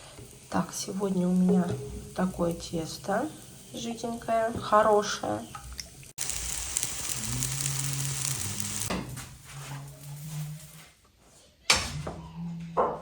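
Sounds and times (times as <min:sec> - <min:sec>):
batter sizzling in a frying pan: 0:00.0 - 0:05.4, 0:06.0 - 0:09.0.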